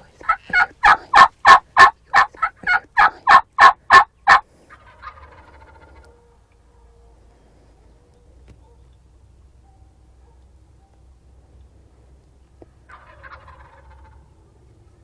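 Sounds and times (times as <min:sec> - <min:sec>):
turkey yelping: 0:00.0 - 0:06.1, 0:12.9 - 0:14.3.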